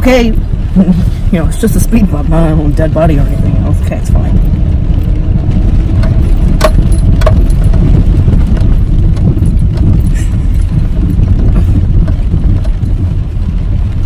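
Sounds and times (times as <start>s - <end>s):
car road rumble: 0.0s - 14.0s.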